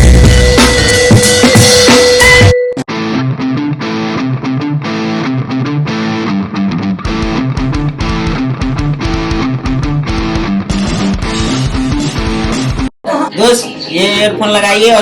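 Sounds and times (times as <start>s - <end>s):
deep regular beat: 0.0s - 2.6s, 7.0s - 12.9s
plucked guitar music: 2.9s - 12.9s.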